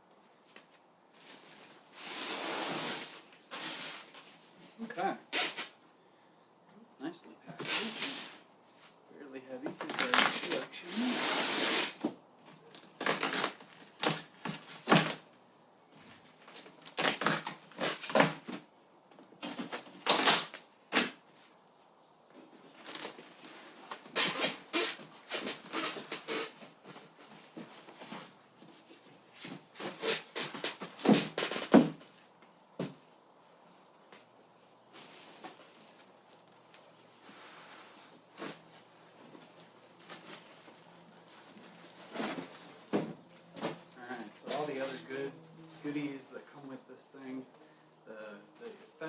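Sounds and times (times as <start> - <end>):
cardboard rustling and scraping: 7.6 - 9.0, 9.6 - 15.3, 22.4 - 33.1, 34.1 - 46.0.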